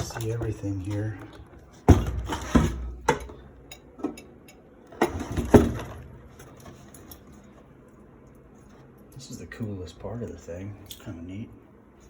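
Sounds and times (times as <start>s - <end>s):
knocks of parts set down: 1.9s - 3.4s, 5.0s - 6.6s.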